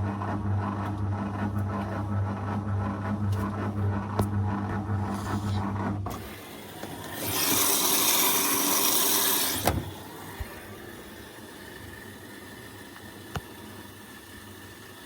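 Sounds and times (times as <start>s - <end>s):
washing machine water inlet hiss: 6.2s - 15.0s.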